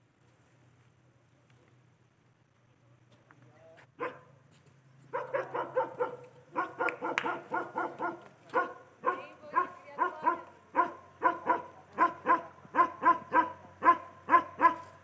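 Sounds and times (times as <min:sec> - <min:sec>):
dog barking: 0:04.0 - 0:04.3, 0:05.1 - 0:15.0.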